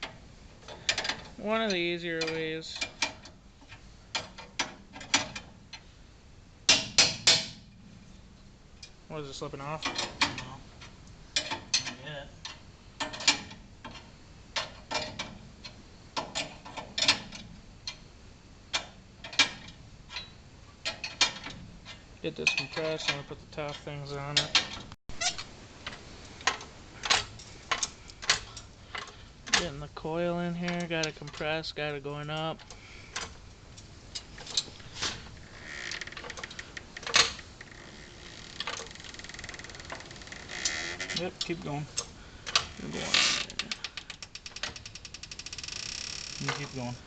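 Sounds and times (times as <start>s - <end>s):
tools clicking on metal spring: 0.7s - 3.4s.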